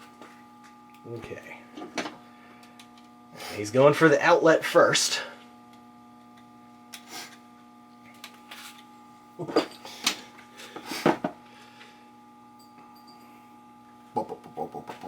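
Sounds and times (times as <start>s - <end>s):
electrical hum: 0.0s - 15.0s
clicks of handling wires: 8.0s - 8.9s.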